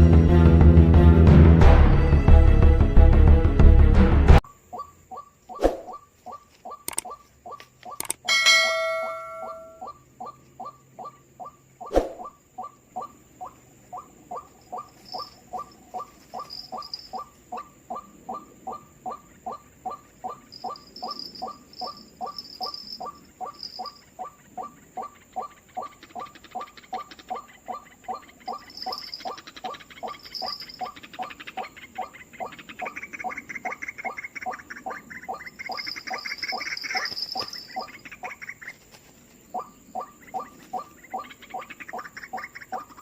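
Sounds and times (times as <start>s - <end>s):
waterhen calling: 4.7s - 38.8s, 39.5s - 43.0s.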